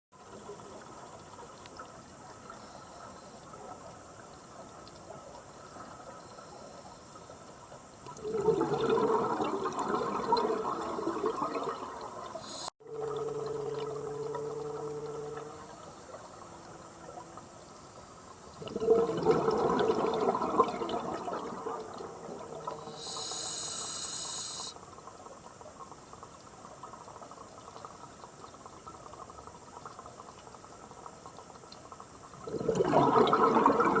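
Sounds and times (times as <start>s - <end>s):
exhaled bubbles gurgling: 7.9s - 34.0s
regulator inhale hiss: 12.4s - 12.8s, 22.7s - 24.9s.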